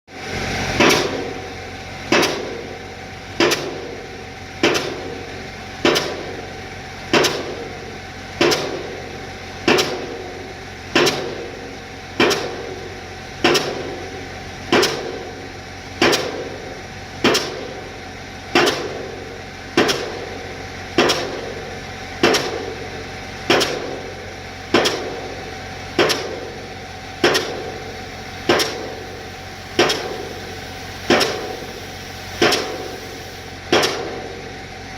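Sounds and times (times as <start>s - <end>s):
engine drone: 0.1s - 34.9s
pile hammer blows: 33.7s - 34.3s.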